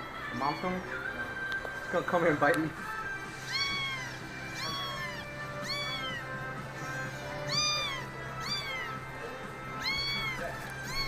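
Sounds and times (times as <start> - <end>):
kitten meowing: 3.3 - 9.1, 9.7 - 11.0.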